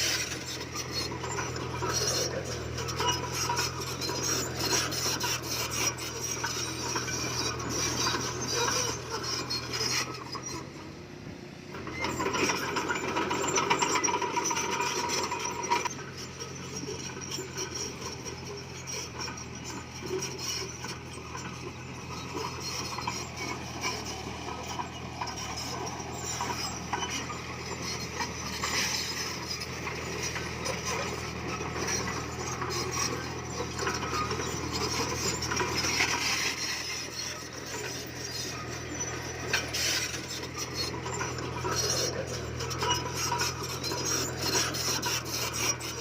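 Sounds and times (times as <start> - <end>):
bulldozer diesel engine running: 0.0 - 46.0
steel tracks clattering: 11.8 - 46.0
stone scraping and clinking: 22.0 - 46.0.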